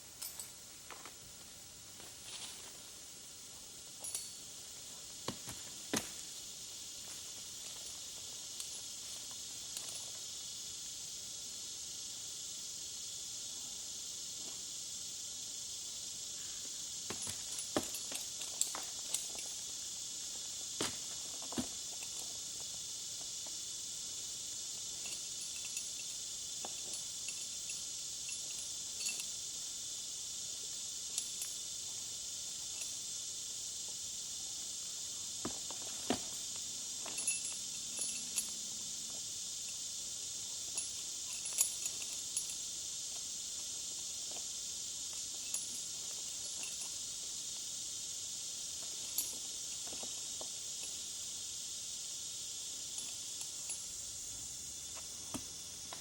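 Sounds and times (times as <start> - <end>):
high-pitched insect chorus: 0.0 - 56.0
light clinks and taps: 0.2 - 1.2, 4.0 - 4.5, 7.6 - 10.3, 17.1 - 19.8, 24.9 - 29.4, 32.6 - 33.0, 35.4 - 39.9, 40.6 - 47.0, 48.8 - 51.0, 52.8 - 54.0.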